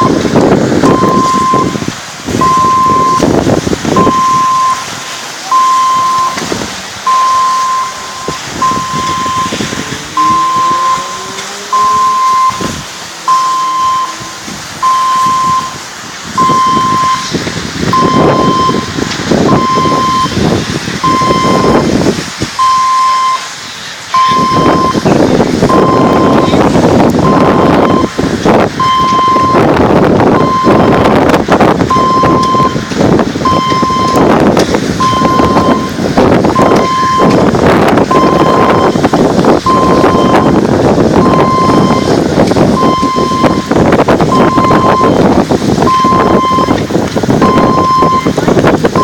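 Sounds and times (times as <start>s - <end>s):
rushing noise: 0.0s - 49.0s
electronic beeper beeping: 0.8s - 1.8s, 2.4s - 3.3s, 3.9s - 6.4s, 7.0s - 15.8s, 16.4s - 17.3s, 17.9s - 20.4s, 21.0s - 21.9s, 22.6s - 25.1s, 25.7s - 28.1s, 31.9s - 34.3s, 35.0s - 36.0s, 36.6s - 37.4s, 38.1s - 39.0s.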